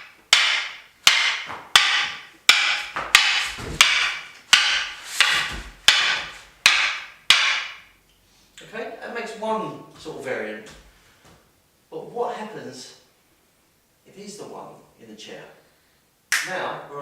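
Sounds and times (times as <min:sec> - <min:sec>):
walking canes clacking together: 0:00.0 - 0:07.8.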